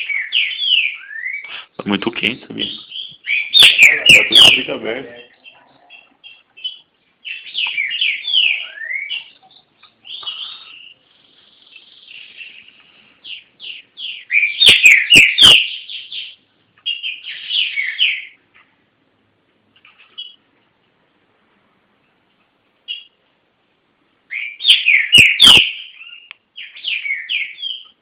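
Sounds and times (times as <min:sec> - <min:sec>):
bird singing falling notes: 0:02.6 - 0:18.4, 0:24.3 - 0:28.0.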